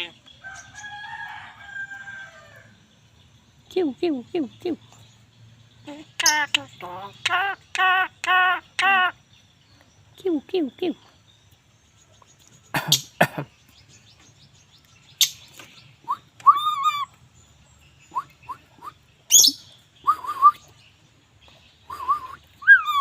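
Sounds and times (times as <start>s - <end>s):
bird harsh rasping calls: 18.1s - 20.4s.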